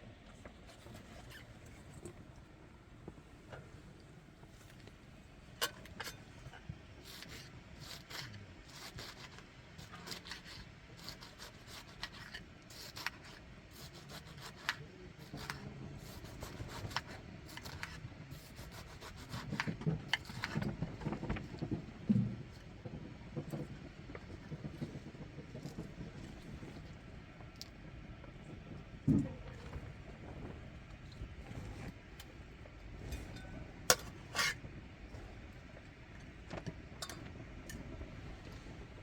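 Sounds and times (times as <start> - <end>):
scraping and rubbing: 32.9 - 35.4.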